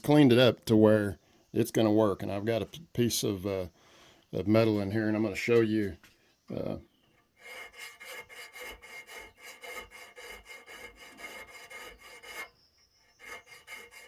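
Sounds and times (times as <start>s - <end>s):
file filing metal: 7.4s - 14.0s.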